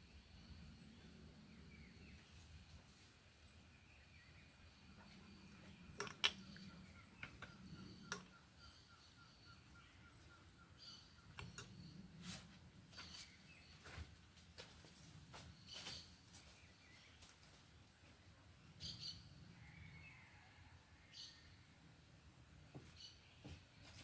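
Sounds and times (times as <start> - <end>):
birds calling: 3.4 - 14.0, 15.4 - 20.4
sharp clicks and taps: 7.2 - 8.3.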